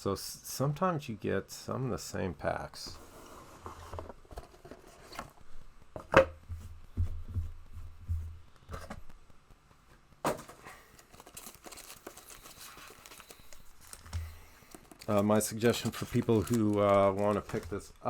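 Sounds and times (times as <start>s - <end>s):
cards tapping and rustling: 10.2s - 18.0s.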